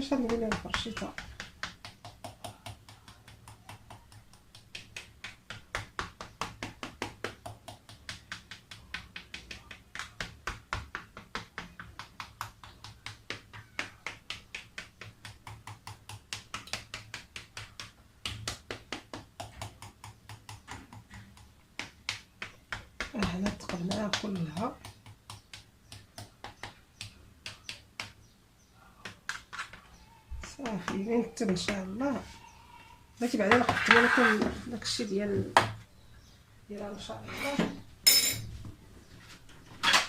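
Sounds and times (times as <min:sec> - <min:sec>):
fork tapping through dough: 0:00.0 - 0:28.3.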